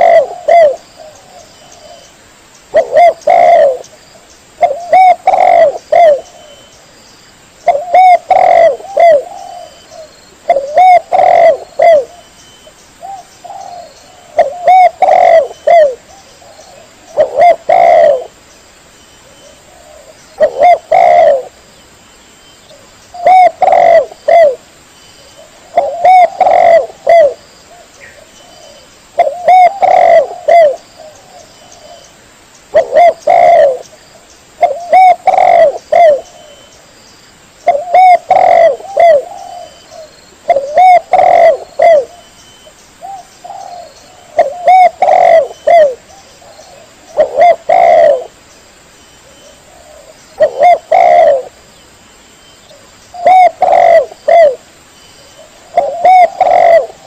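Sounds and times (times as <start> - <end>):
dove cooing: 0.0 - 2.1, 2.7 - 3.9, 4.6 - 6.7, 7.6 - 12.3, 13.0 - 18.4, 19.2 - 21.6, 22.7 - 24.6, 25.3 - 32.1, 32.7 - 33.9, 34.6 - 36.7, 37.6 - 42.3, 43.0 - 48.4, 49.2 - 51.6, 52.7 - 54.7, 55.3 - 57.0.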